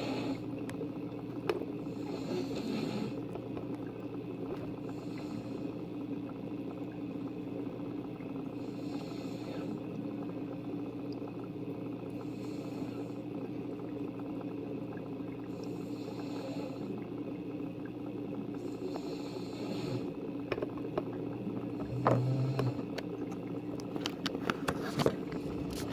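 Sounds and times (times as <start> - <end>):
person snoring: 21.8 - 22.9.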